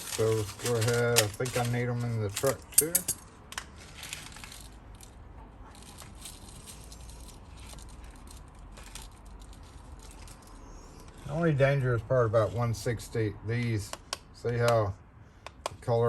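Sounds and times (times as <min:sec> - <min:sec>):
metal pins clicking and rattling: 0:00.0 - 0:10.6.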